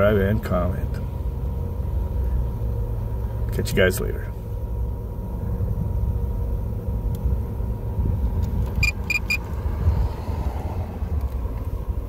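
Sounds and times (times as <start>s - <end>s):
steady low rumble: 0.0s - 12.0s
high electronic beeps: 8.8s - 9.4s.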